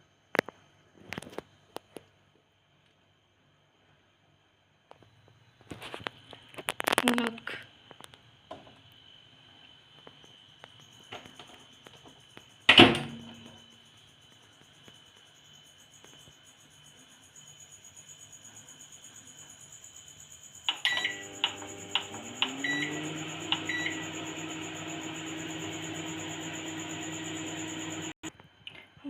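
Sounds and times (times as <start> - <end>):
microwave door shutting: 12.7 - 13.4, 20.7 - 28.1
microwave oven humming: 20.7 - 28.3.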